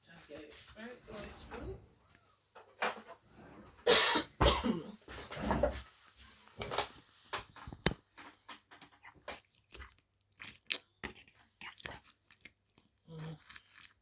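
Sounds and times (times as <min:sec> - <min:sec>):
spoon stirring in a jar: 0:06.6 - 0:14.0.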